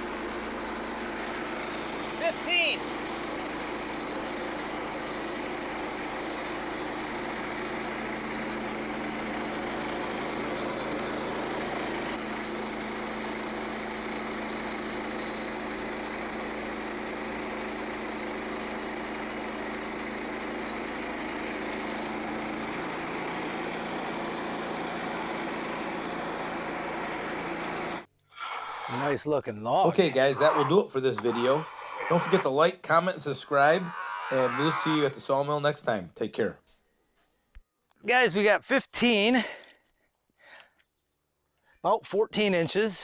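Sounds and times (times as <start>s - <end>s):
engine running steadily: 0.0s - 28.1s.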